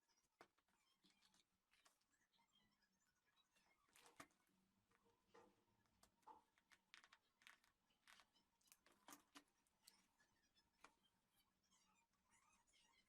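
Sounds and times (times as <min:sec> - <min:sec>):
faint clicks and rustles: 0:03.9 - 0:11.1.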